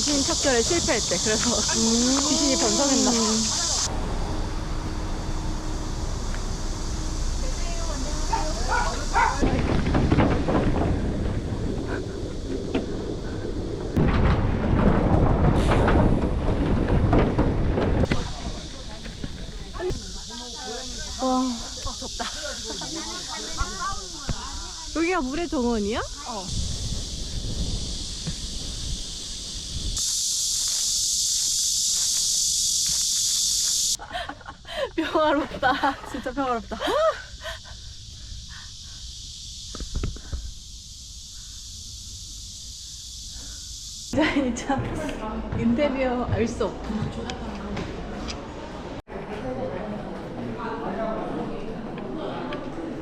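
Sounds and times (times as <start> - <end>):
low rumbling noise: 0.0 - 30.5
cicadas droning: 0.0 - 49.0.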